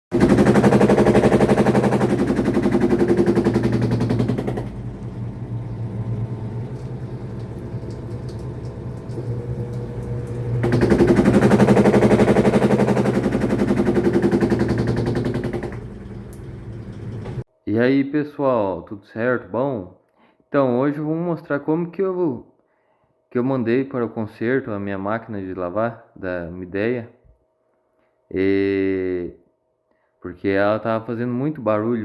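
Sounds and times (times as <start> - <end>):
washing machine spin rattling: 0.1 - 17.5.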